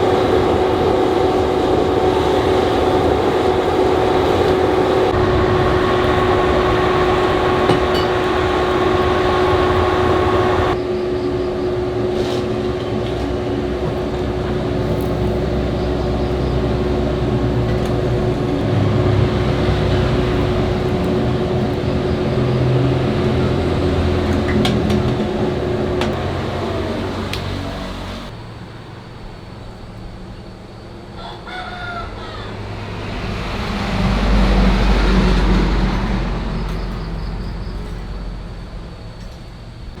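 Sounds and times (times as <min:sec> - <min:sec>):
workshop machine humming: 0:00.0 - 0:29.8.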